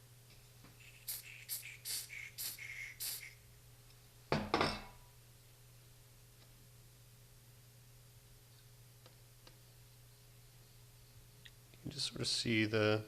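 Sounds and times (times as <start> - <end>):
short spray hisses: 0.8 - 3.4.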